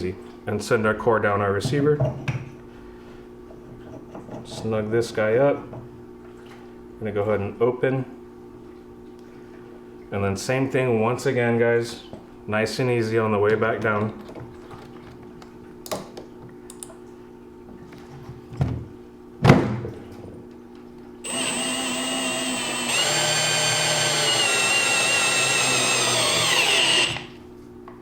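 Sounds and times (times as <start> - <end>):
drill motor running: 21.2 - 27.4.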